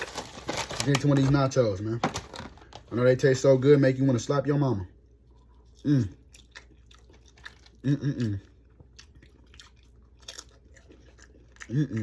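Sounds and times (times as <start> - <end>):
chewing crunchy chips: 5.2 - 12.0
closed-mouth mmm hums: 7.8 - 8.6.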